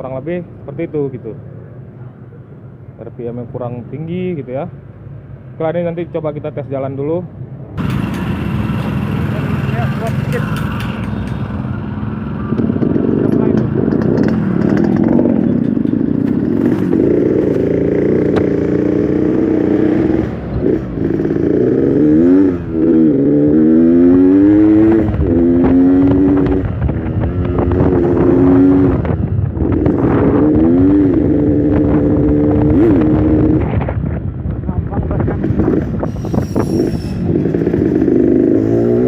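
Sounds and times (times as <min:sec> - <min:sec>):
motorcycle engine revving: 0:07.8 - 0:39.0.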